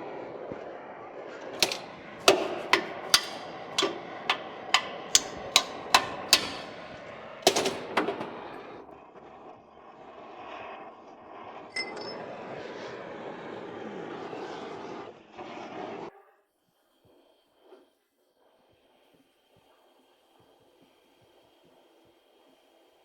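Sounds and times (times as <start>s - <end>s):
hammer striking metal: 1.6s - 8.8s.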